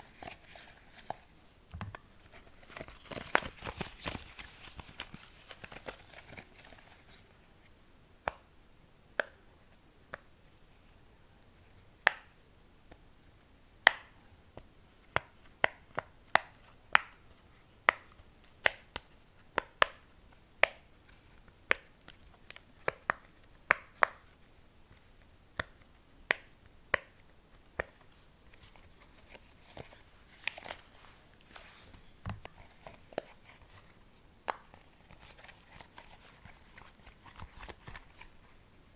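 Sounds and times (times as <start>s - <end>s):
crackling handling sounds: 0.0s - 7.8s, 27.2s - 38.9s.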